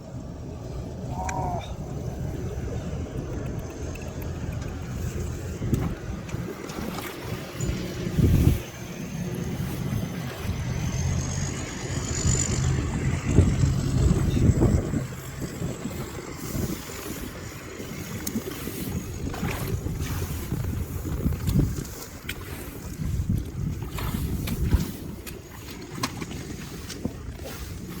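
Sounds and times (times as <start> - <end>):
combine harvester engine running: 0.0 - 21.4
wind noise on microphone: 0.0 - 28.0.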